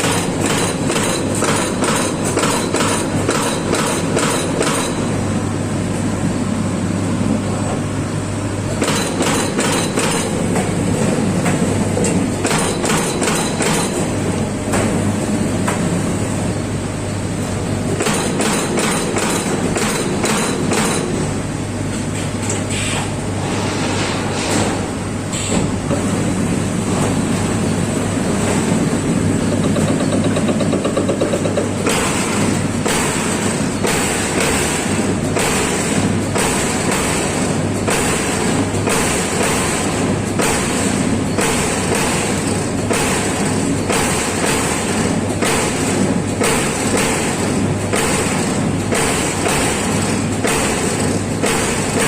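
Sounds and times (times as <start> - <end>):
punch press striking sheet metal: 0.0 - 5.2, 8.7 - 10.8, 11.4 - 15.0, 17.9 - 21.4, 28.4 - 52.0.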